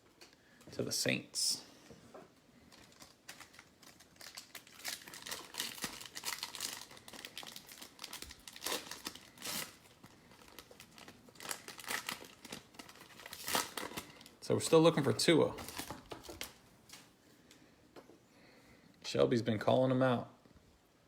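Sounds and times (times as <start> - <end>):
foil wrapper crinkling and tearing: 2.6 - 17.0.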